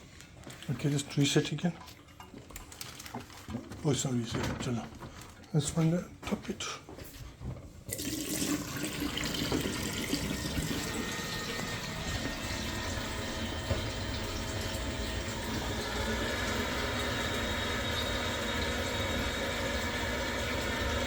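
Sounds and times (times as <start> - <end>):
water rushing: 8.0 - 21.0.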